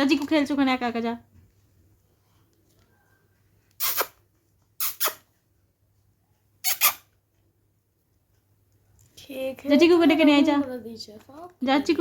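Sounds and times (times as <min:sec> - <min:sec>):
parrot squawking: 0:06.6 - 0:07.1.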